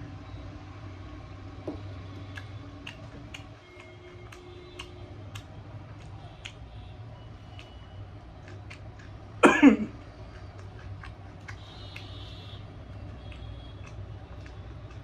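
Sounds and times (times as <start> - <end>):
person coughing: 9.4 - 10.0.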